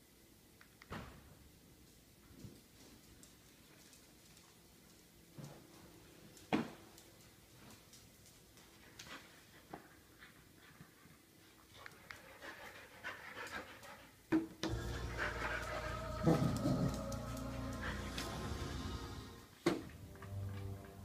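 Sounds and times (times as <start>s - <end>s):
dog panting: 8.9s - 18.8s
television sound with music: 14.6s - 21.0s.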